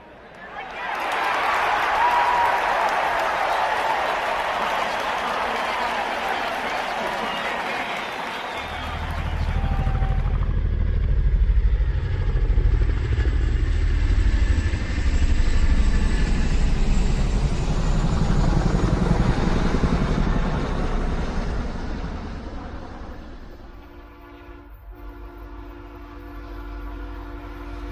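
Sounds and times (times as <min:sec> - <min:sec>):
engine running with low pulsing: 0:08.9 - 0:24.2.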